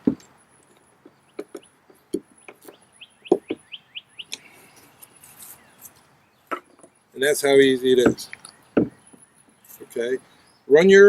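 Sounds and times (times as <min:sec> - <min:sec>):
hand tools clicking and knocking: 0:00.0 - 0:03.6, 0:07.9 - 0:09.9
bird chirping: 0:00.0 - 0:11.0.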